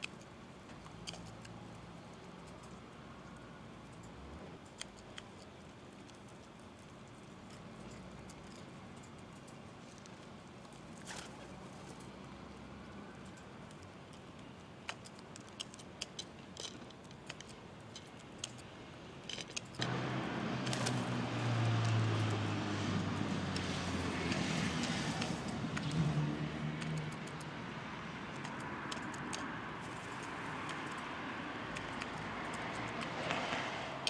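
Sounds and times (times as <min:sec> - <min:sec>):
low engine hum: 0:19.8 - 0:28.8.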